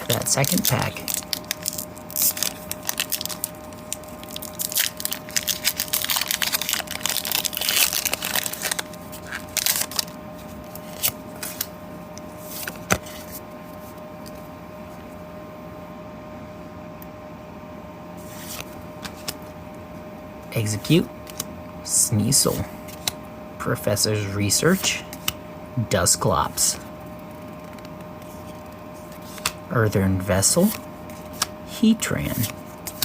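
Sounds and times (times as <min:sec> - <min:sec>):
foil wrapper tearing and crinkling: 0:00.0 - 0:10.2.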